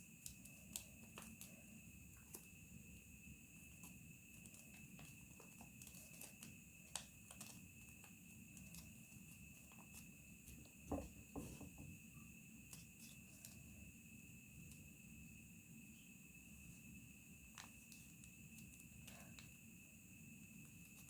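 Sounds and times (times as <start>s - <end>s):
paper crinkling while folded: 0.1s - 2.7s, 3.6s - 10.8s, 12.7s - 13.8s, 17.5s - 19.5s.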